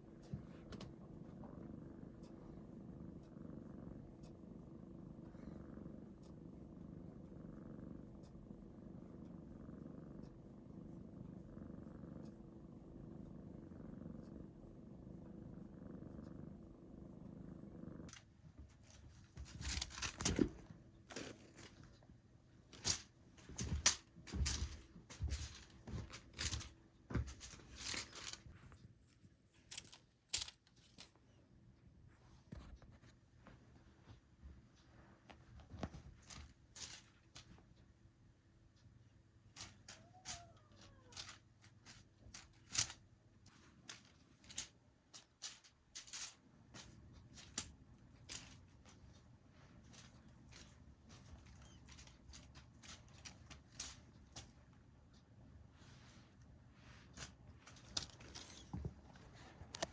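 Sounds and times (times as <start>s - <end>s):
cat purring: 0.0s - 59.9s
rustles clicks and knocks: 18.1s - 22.0s, 22.7s - 28.8s, 39.5s - 49.2s, 57.1s - 59.9s.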